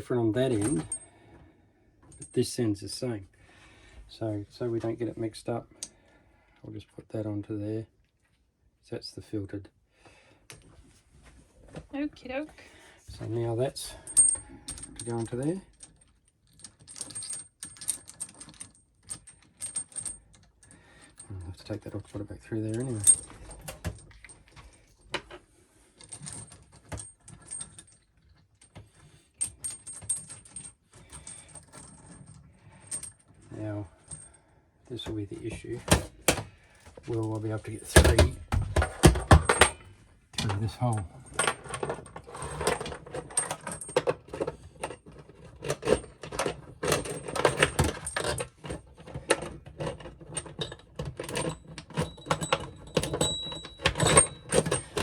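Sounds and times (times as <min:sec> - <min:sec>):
metal hose fittings rattling: 0:13.7 - 0:25.3, 0:26.0 - 0:55.0.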